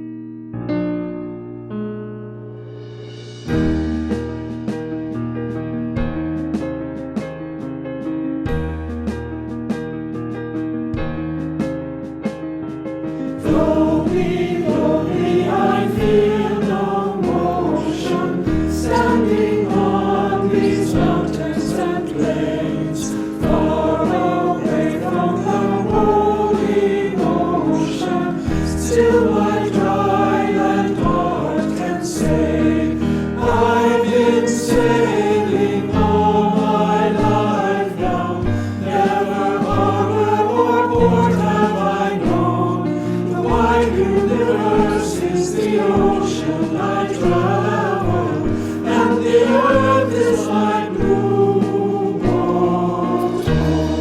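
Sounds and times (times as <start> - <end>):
piano accompaniment: 0.0 - 54.0
choir singing a hymn: 13.2 - 54.0.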